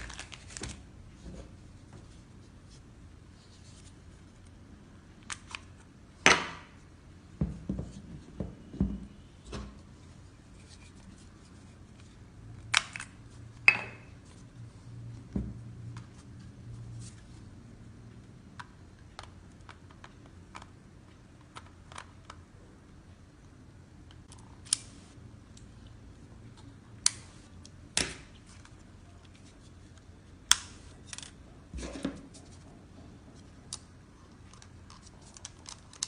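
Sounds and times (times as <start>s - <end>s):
camera and packaging handling: 0.0s - 0.8s.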